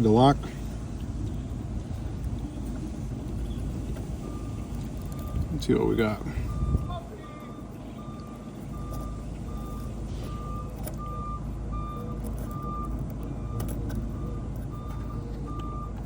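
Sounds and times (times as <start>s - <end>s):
low rumble: 0.0s - 16.0s
electronic beeper beeping: 4.2s - 15.9s.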